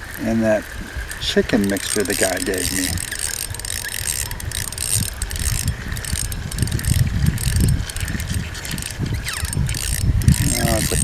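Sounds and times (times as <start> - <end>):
fishing reel ratcheting: 0.0 - 11.0
wind buffeting microphone: 0.0 - 11.0.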